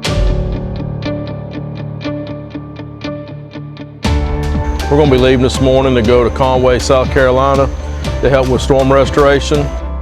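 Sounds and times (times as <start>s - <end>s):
plucked notes over low notes: 4.1s - 9.8s.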